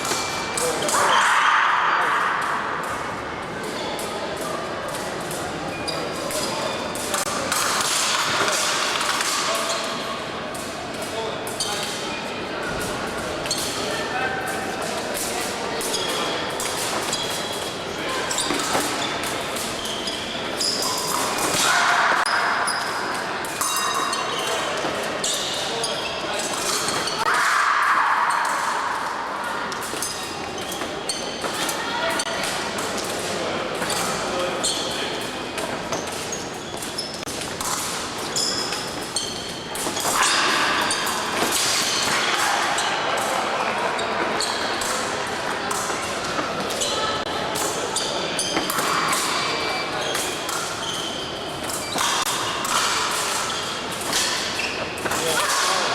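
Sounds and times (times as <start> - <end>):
fencing blades clashing: 0.0 - 55.9
voices in a large hall: 0.0 - 55.9
shoes squeaking on floor: 15.8 - 21.4, 30.0 - 31.7, 34.6 - 35.0, 35.6 - 41.0, 44.0 - 44.9, 47.9 - 52.2.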